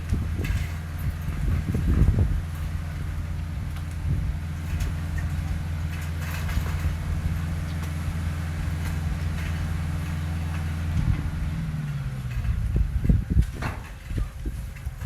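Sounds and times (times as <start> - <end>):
heavy diesel engine running: 0.0 - 15.0
faint metallic clanks: 4.6 - 15.0.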